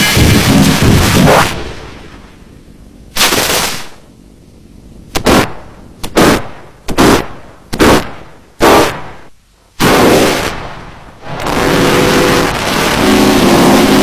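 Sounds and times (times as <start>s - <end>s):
harsh noise bursts: 0.0s - 2.4s, 6.1s - 14.0s.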